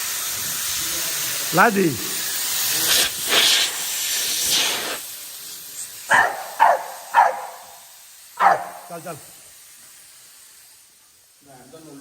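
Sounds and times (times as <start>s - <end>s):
steady hiss with surges: 0.0s - 12.0s
dog barking: 6.1s - 7.8s, 8.4s - 8.9s.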